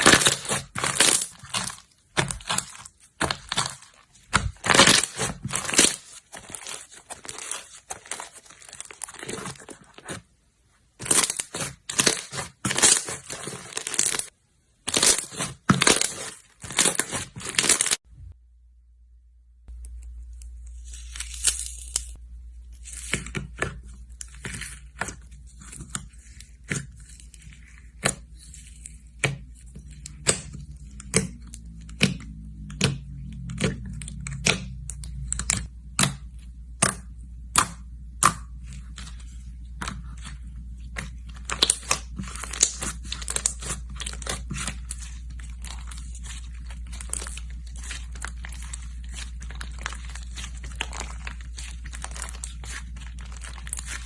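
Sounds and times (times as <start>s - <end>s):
slime crinkly crackling: 0.0s - 10.3s, 11.0s - 18.0s, 38.7s - 54.0s.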